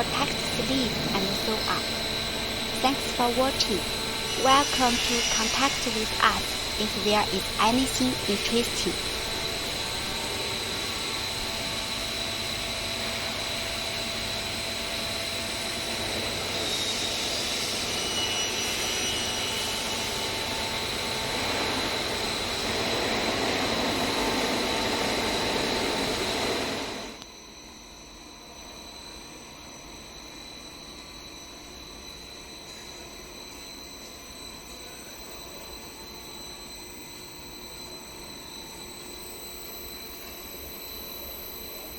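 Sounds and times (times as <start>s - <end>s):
production line machinery whining: 0.0s - 27.2s.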